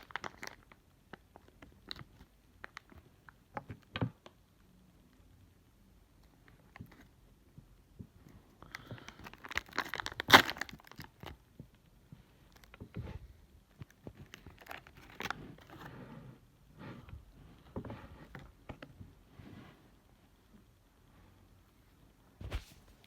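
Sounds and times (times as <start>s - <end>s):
plastic packaging crinkling: 0.0s - 0.7s, 8.8s - 11.4s, 14.1s - 15.8s.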